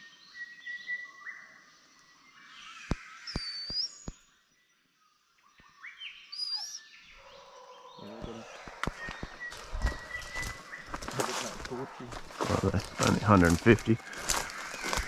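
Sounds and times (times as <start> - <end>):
bird's swooping whistle: 3.2 - 4.1
chorus of calling creatures: 7.8 - 15.0.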